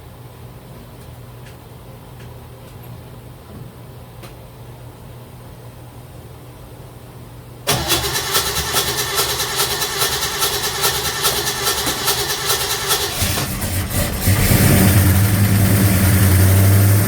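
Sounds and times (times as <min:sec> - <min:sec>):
car engine starting and running: 0:07.7 - 0:17.0.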